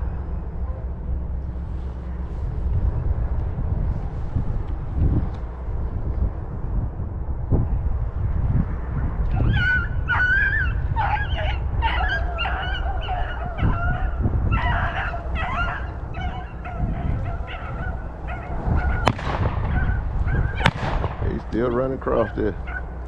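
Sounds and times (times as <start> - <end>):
wind rumble on microphone: 0.0 - 23.0
hounds bawling and yelping: 9.3 - 21.0, 21.6 - 23.0.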